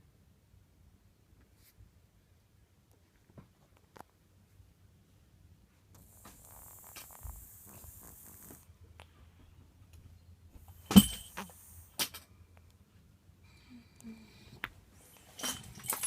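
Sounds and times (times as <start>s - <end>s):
cat snoring faintly: 6.0s - 9.3s, 13.5s - 15.4s.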